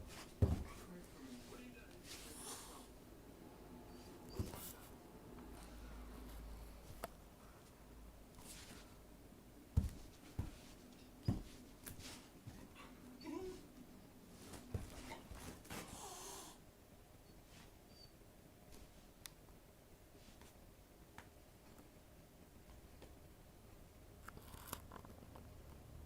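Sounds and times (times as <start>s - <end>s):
dog breathing: 2.2s - 3.0s
dog movement noises: 9.8s - 15.9s.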